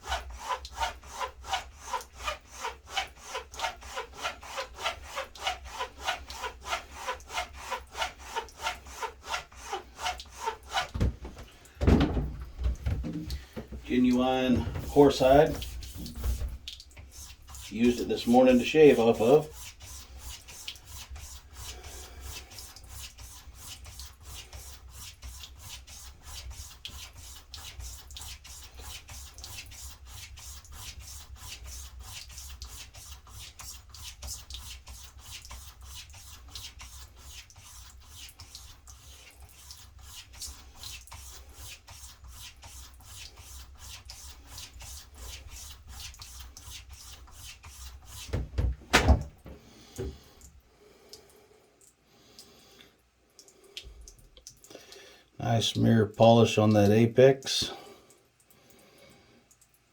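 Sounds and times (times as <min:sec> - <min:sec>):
razor stropping on leather: 0:00.0 - 0:10.9, 0:13.9 - 0:48.5
loud knocks: 0:10.9 - 0:13.8, 0:48.3 - 0:49.6.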